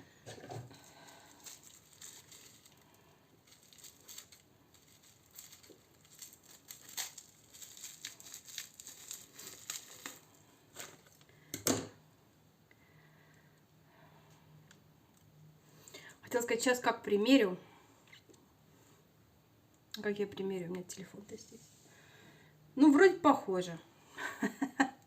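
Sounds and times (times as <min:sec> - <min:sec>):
packaging rustling and crinkling: 0:00.3 - 0:11.3.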